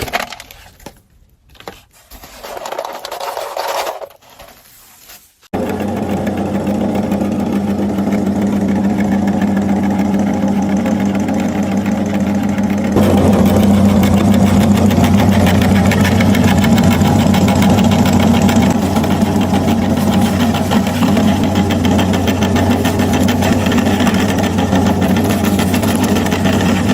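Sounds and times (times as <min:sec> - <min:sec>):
electric meat grinder motor: 0:05.6 - 0:26.9.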